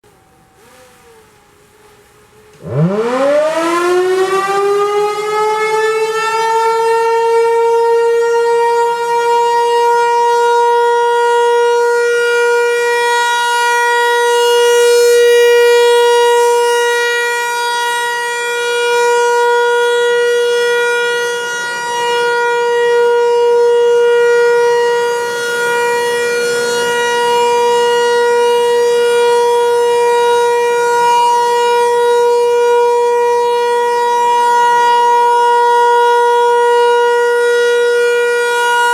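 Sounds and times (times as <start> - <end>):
rotating warning siren tone: 0.0 - 38.9.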